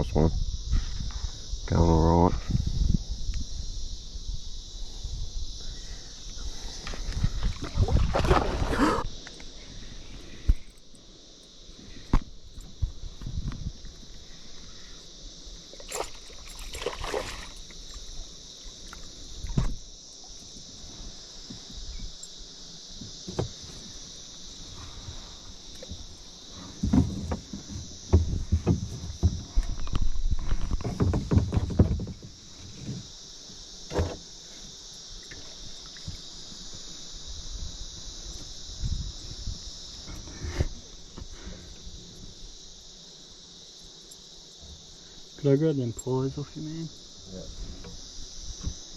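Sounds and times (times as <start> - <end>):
crickets chirping: 0.0 - 48.9
insects droning: 0.0 - 48.9
water lapping: 15.7 - 18.2
knocks from small boat: 23.2 - 23.6, 26.8 - 29.6, 30.7 - 32.4
handling rustling and bumps: 25.8 - 33.0.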